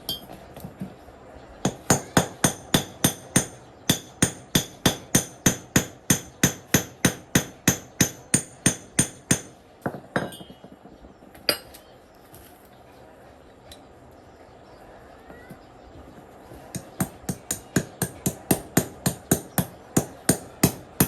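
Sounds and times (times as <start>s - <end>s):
hammer striking metal: 0.0s - 0.4s, 1.7s - 10.7s, 16.7s - 21.0s.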